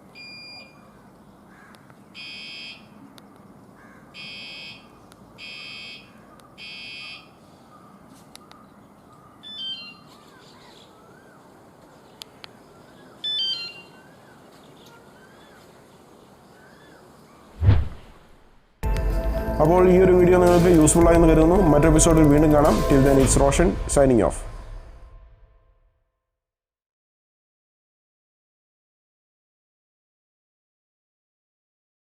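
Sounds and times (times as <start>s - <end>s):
two-tone beep: 0.2s - 0.8s
falling stepped chirps: 17.6s - 18.6s.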